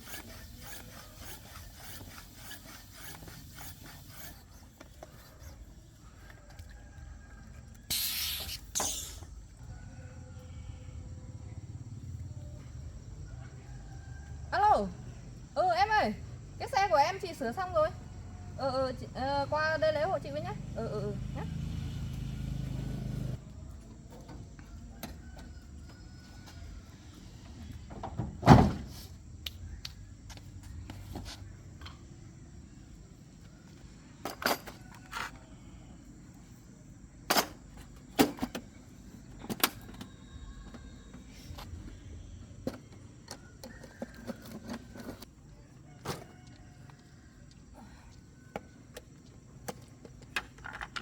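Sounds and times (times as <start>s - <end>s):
handling knocks and clicks: 48.6s - 51.0s.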